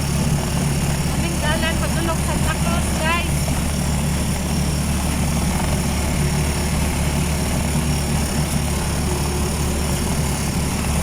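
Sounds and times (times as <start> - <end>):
vehicle engine drone and road noise: 0.0 - 11.0.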